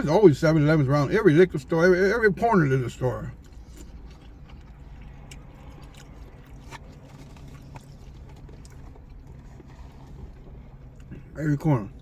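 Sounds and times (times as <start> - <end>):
man chewing with mouth smacks: 3.2 - 11.4.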